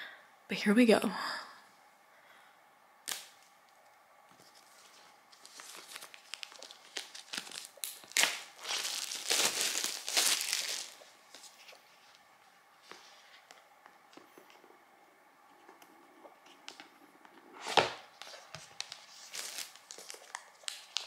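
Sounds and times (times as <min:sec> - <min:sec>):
packaging ripping and rustling: 0:04.4 - 0:11.5, 0:19.0 - 0:21.0.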